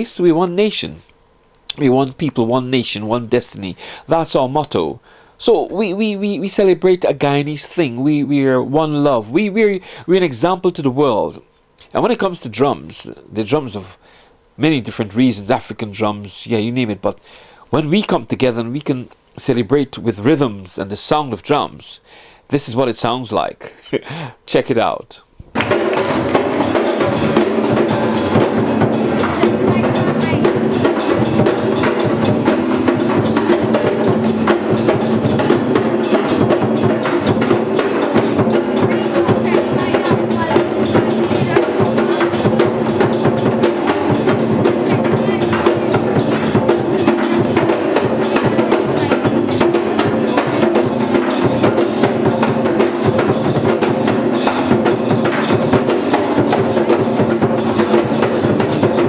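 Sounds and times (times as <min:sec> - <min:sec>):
hand drums playing fast rhythm: 0:25.5 - 0:59.0.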